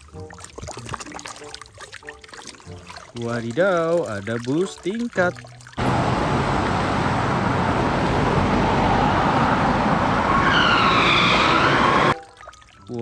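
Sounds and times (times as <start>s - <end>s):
bus engine and road noise: 5.8s - 12.2s
falling horn-like tone: 6.8s - 12.2s.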